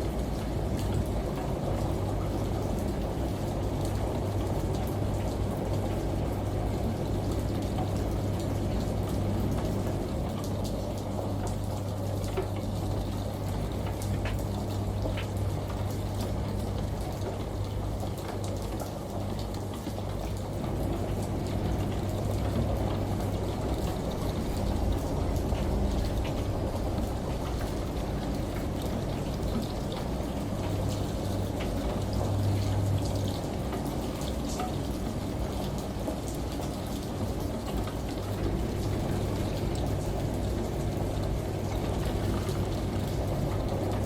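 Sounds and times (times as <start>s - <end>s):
faint drips and ticks: 0.0s - 44.0s
running water: 0.0s - 44.0s
low even hum: 36.9s - 44.0s.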